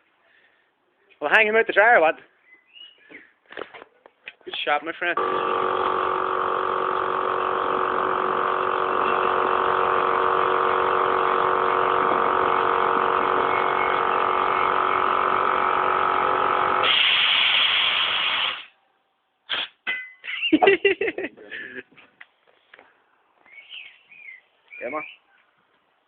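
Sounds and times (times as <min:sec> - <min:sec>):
air compressor buzzing hum: 0:05.2 - 0:18.8
loud hiss: 0:05.2 - 0:18.8.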